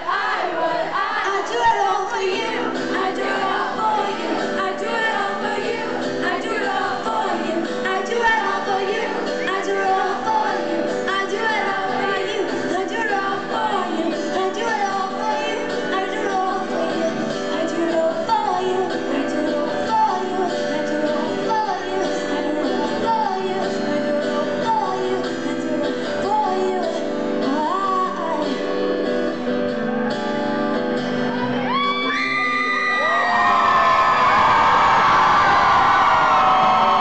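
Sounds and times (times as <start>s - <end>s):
woman singing: 0.0s - 29.4s
live pop band: 0.0s - 37.0s
audience whooping and cheering: 30.1s - 37.0s.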